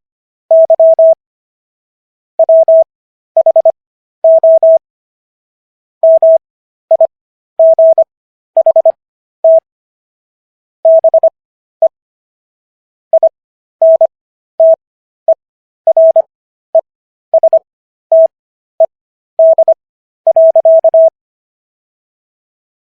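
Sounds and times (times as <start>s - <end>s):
morse code beeps: 0.5s - 1.2s, 2.4s - 4.8s, 6.0s - 9.7s, 10.9s - 12.0s, 13.2s - 16.3s, 17.4s - 21.2s.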